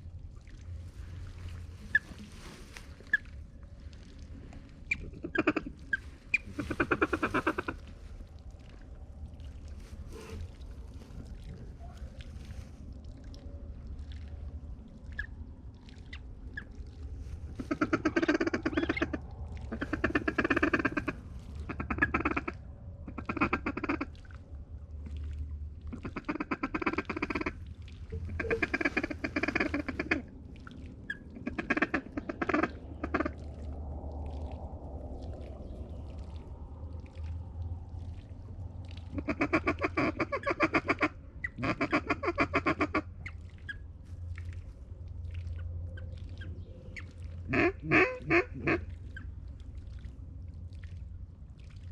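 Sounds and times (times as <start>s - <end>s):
steady low rumble: 0.0s - 51.9s
duck quacking: 5.2s - 7.8s, 17.6s - 21.1s, 21.7s - 22.6s, 23.2s - 24.1s, 28.2s - 30.2s, 31.4s - 33.4s, 39.2s - 43.1s, 47.5s - 48.9s.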